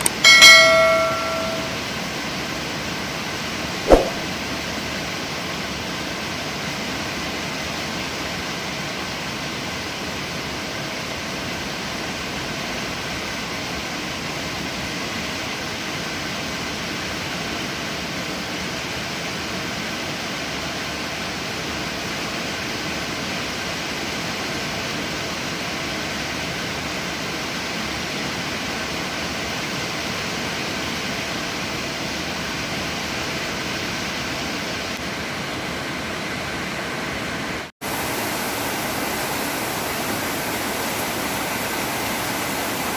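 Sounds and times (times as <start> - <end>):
heavy rain falling: 37.8 - 42.9.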